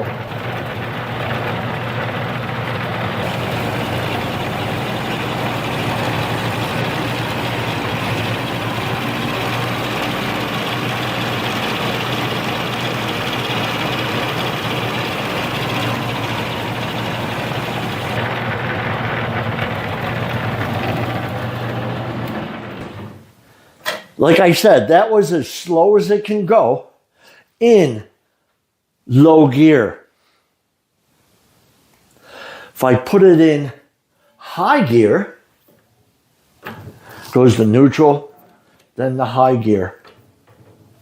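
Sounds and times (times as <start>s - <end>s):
drive whirring: 0.0s - 23.2s
lathe motor humming: 0.0s - 23.2s.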